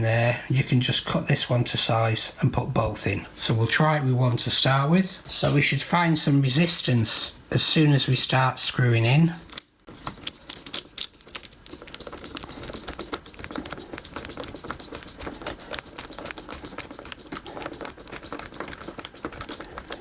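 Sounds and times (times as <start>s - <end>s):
wood screw clicking and creaking: 9.5s - 20.0s.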